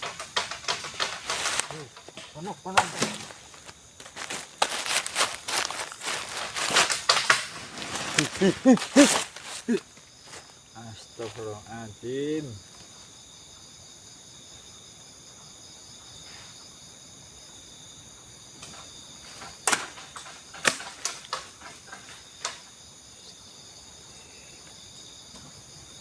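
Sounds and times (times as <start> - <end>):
high-pitched insect chorus: 0.0 - 26.0
sharp cracks and snaps: 4.6 - 9.7, 19.4 - 22.7.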